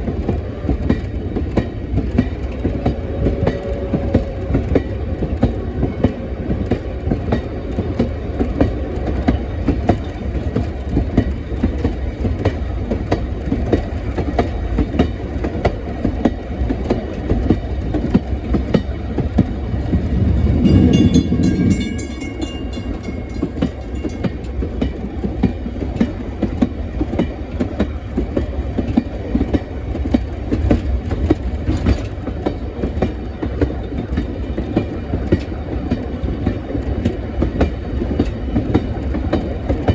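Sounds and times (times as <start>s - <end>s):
train rolling along track: 0.0s - 39.9s
faint high tone: 19.8s - 24.4s.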